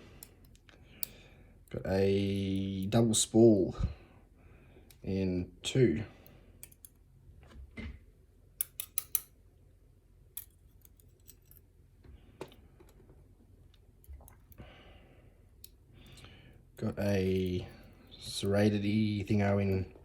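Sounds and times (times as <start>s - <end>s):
metallic clicks of lock pins: 6.6s - 7.0s, 8.6s - 9.4s.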